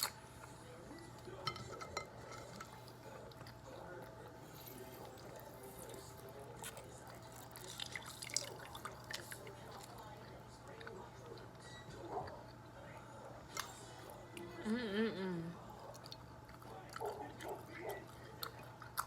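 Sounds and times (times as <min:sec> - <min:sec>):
wet eating sounds: 0:02.3 - 0:11.6, 0:15.6 - 0:19.0.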